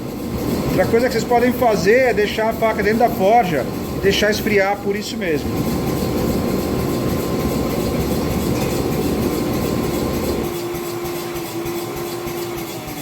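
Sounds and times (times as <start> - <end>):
steady humming tone: 0.0 - 13.0.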